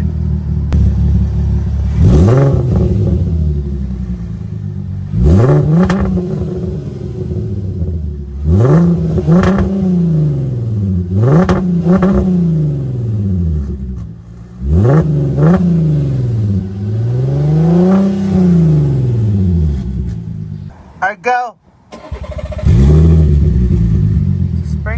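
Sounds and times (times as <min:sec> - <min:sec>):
car engine revving: 0:00.0 - 0:21.0, 0:21.9 - 0:24.9.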